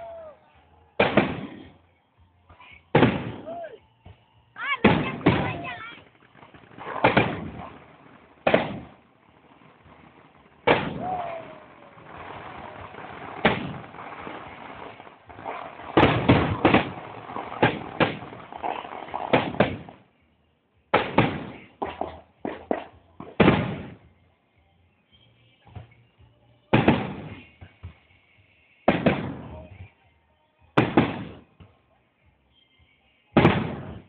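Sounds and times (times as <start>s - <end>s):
fireworks banging: 0.8s - 1.9s, 2.5s - 20.1s, 20.9s - 24.1s, 26.7s - 28.0s, 28.9s - 29.9s, 30.8s - 31.7s, 33.4s - 34.0s.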